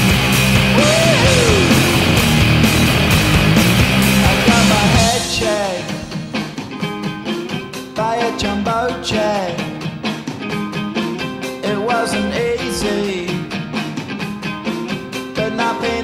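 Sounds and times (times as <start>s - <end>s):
drum beat: 0.0s - 11.8s
sung or shouted vocals: 0.8s - 2.9s, 4.0s - 6.3s, 8.0s - 9.8s, 11.6s - 13.4s, 15.4s - 16.0s.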